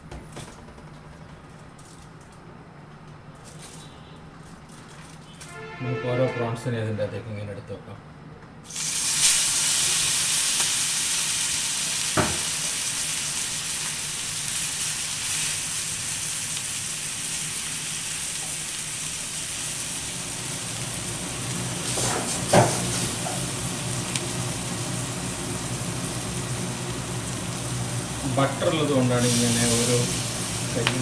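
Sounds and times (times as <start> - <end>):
prawns sizzling in a frying pan: 8.7 - 31.0.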